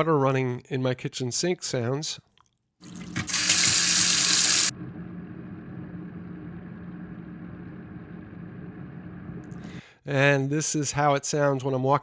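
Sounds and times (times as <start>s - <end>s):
water running from tap: 2.8s - 4.7s.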